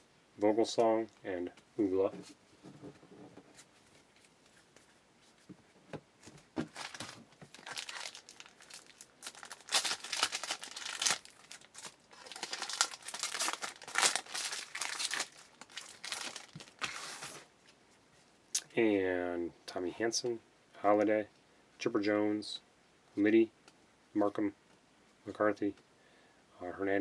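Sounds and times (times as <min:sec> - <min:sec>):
wrapper crinkling: 0:06.6 - 0:17.5
wrapper being torn open: 0:06.8 - 0:17.4.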